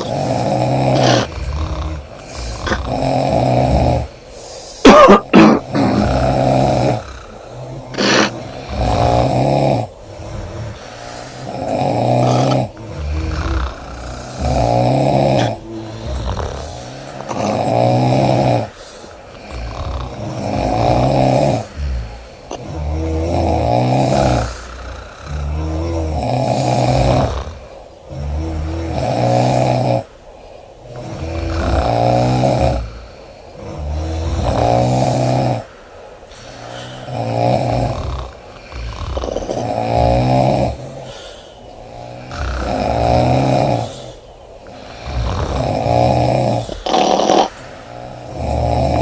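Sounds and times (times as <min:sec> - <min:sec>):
woman snoring loudly: 0:00.0 - 0:30.1, 0:30.8 - 0:35.7, 0:36.3 - 0:49.0.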